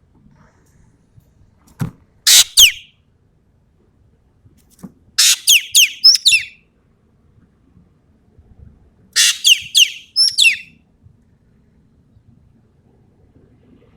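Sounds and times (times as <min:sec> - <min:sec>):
bird giving harsh calls: 0:02.3 - 0:02.8, 0:05.2 - 0:06.6, 0:09.2 - 0:10.7.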